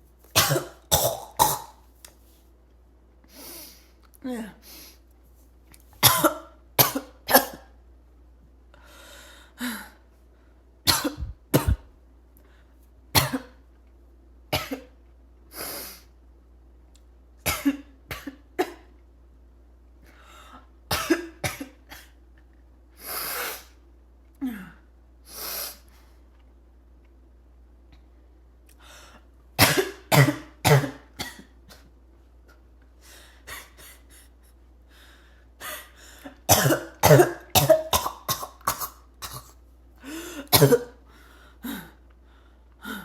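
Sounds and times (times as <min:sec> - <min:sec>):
person coughing: 0:00.4 - 0:01.8, 0:06.0 - 0:07.7, 0:10.9 - 0:11.9, 0:13.2 - 0:13.6, 0:20.9 - 0:22.2, 0:29.6 - 0:31.9, 0:36.2 - 0:41.0.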